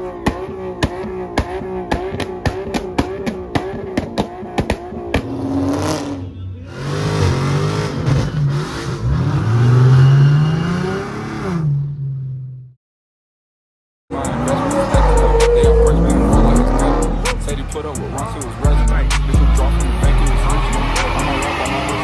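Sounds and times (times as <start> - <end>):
car engine revving: 0.0 - 12.6, 14.1 - 22.0
music with a steady beat: 14.1 - 22.0.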